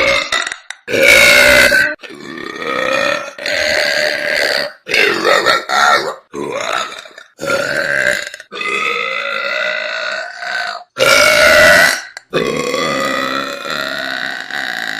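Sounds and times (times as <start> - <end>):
girl burping: 0.0 - 5.8.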